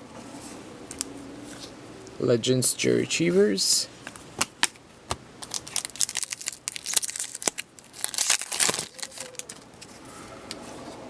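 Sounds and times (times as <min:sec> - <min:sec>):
foil wrapper crinkling and tearing: 0:05.4 - 0:09.9.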